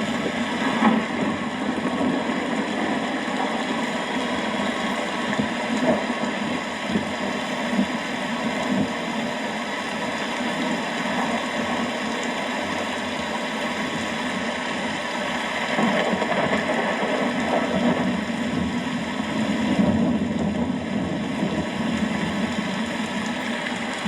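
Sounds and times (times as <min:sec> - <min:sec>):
steady rain falling: 0:00.0 - 0:24.0
low thunder rumble: 0:15.6 - 0:24.0.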